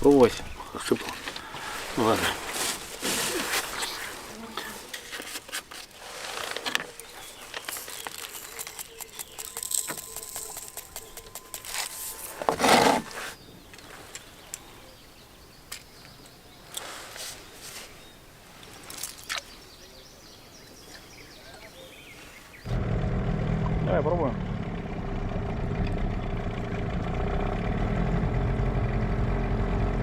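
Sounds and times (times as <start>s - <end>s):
fishing tackle rustling and clicking: 4.9s - 13.2s, 18.6s - 19.5s.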